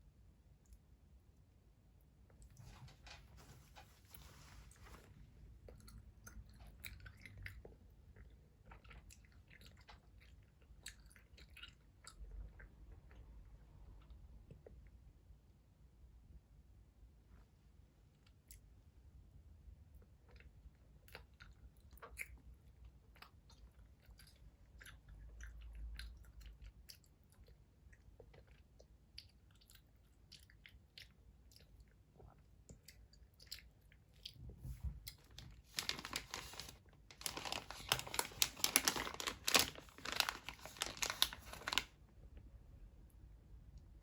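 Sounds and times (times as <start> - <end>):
dense chewing crackle: 35.1 - 41.9.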